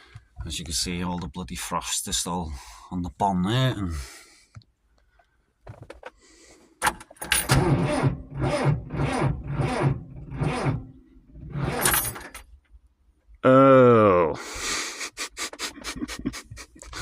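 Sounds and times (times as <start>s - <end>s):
tractor engine cranking: 6.8s - 12.5s.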